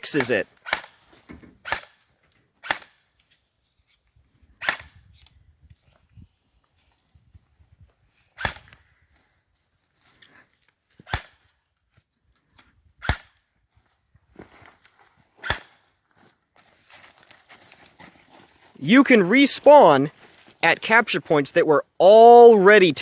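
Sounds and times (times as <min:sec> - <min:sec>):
airsoft gun shots: 0:00.2 - 0:01.0, 0:02.6 - 0:03.0, 0:04.6 - 0:05.0, 0:08.4 - 0:08.8, 0:15.4 - 0:15.8.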